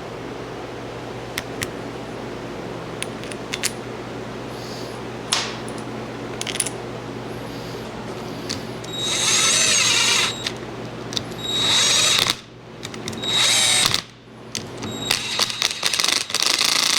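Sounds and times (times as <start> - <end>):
steady low hum: 0.0 - 16.5
metal tools clinking: 5.3 - 6.8.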